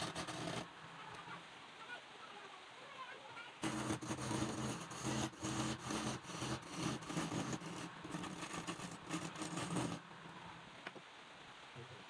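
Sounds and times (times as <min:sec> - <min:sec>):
lathe motor hum: 0:00.0 - 0:00.6, 0:03.6 - 0:10.5
tool scraping spinning wood: 0:00.0 - 0:00.7, 0:03.6 - 0:10.4.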